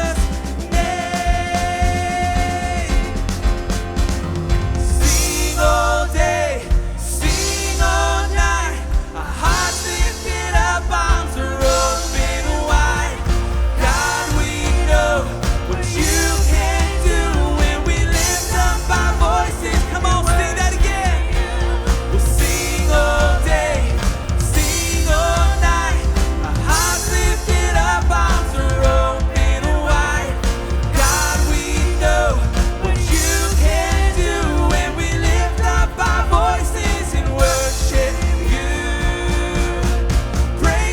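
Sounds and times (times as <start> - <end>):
rock band playing: 0.0 - 40.9
person singing lead melody: 5.0 - 40.9.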